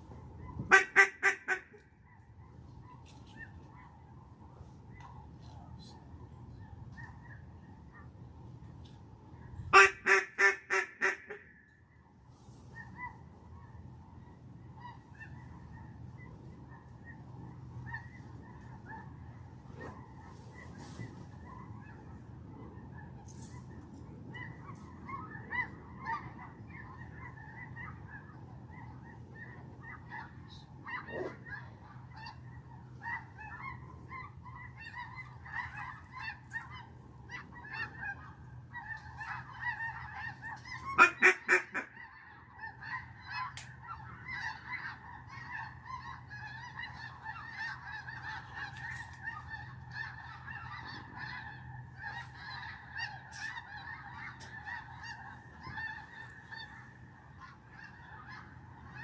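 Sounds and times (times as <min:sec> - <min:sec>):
waterfowl honking and quacking: 0:00.4 - 0:04.0, 0:09.6 - 0:13.7, 0:14.8 - 0:59.0.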